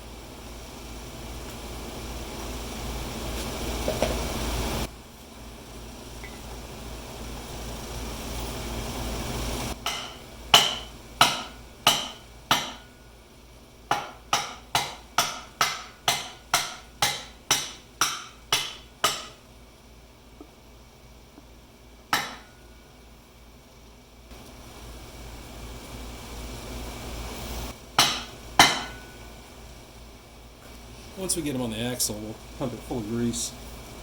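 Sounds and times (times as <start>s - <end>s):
hammer striking metal: 9.8s - 13.0s, 13.9s - 19.4s, 22.1s - 22.7s, 28.0s - 29.2s.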